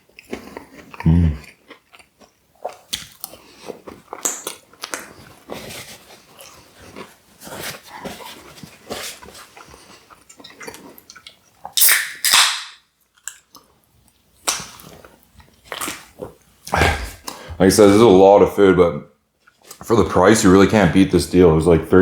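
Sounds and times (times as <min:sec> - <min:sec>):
wet chewing clicks and smacks: 0:00.0 - 0:05.4.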